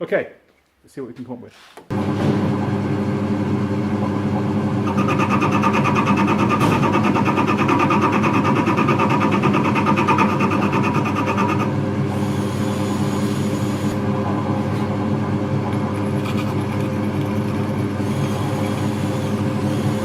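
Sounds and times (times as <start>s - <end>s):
workshop machine humming: 1.8s - 20.0s.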